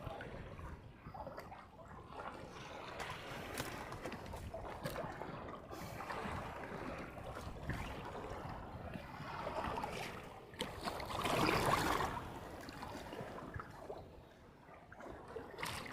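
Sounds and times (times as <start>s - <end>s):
water lapping against boat hull: 0.0s - 15.9s.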